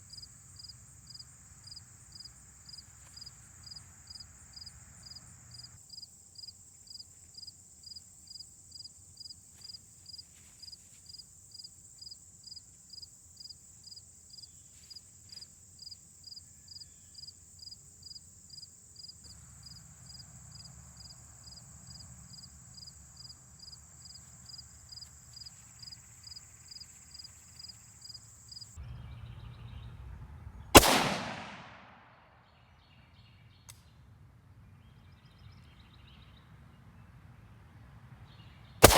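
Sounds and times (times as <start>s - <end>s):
rifle shot: 30.8s - 32.2s.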